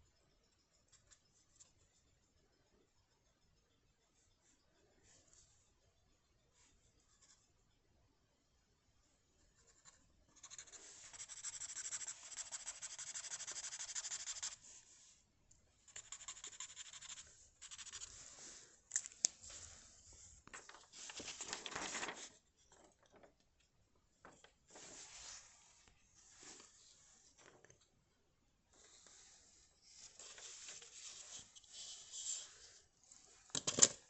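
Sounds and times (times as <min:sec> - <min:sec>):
drawing tool scratching paper: 0:09.7 - 0:14.6, 0:15.9 - 0:18.2.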